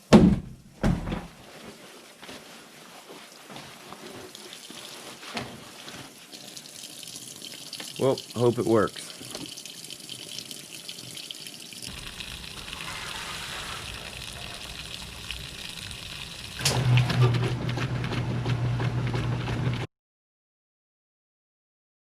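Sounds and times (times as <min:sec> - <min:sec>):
water rushing in washing machine: 0:03.0 - 0:19.9
motor low hum: 0:11.9 - 0:19.9.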